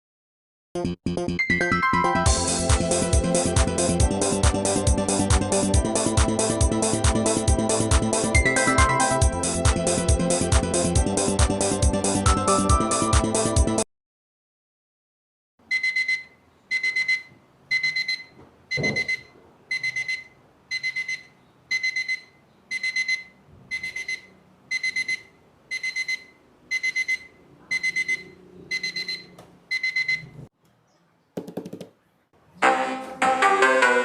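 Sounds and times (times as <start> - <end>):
digital alarm clock beeping: 8.4 - 9.2, 15.7 - 30.4.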